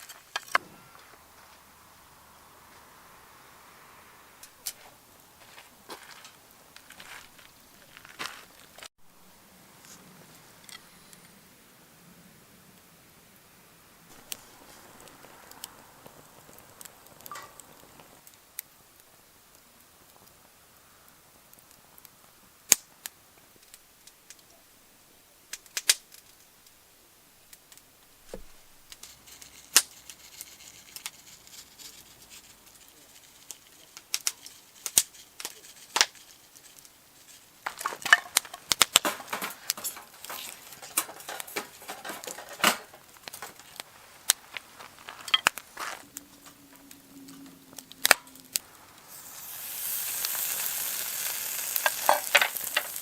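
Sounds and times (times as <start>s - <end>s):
meat sizzling on hot metal: 14.1s - 24.5s, 25.2s - 47.0s, 47.6s - 53.0s
sharp clicks and snaps: 22.7s - 22.9s, 25.5s - 26.8s, 37.6s - 41.2s, 45.3s - 48.7s.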